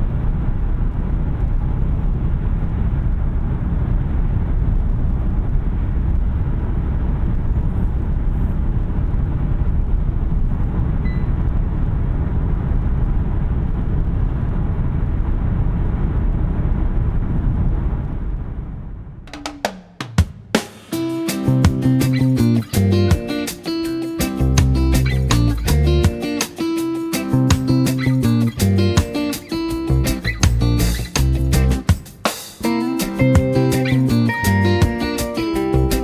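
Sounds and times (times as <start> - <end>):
car cabin road and wind noise: 0.0 - 19.0.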